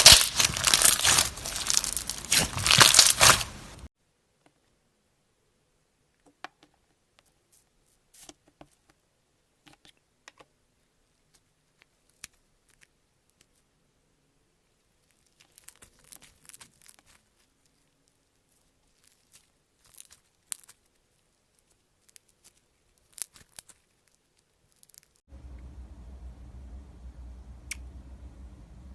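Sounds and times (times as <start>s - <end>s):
slime crackling and popping: 0.0s - 3.9s, 15.0s - 17.5s, 18.8s - 21.0s, 21.6s - 25.2s.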